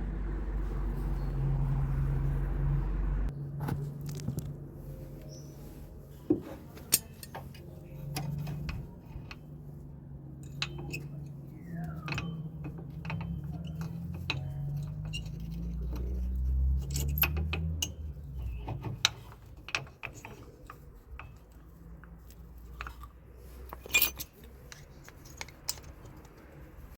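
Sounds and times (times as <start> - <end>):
low rumble: 0.0 - 3.4
metal tools clinking: 6.2 - 26.7.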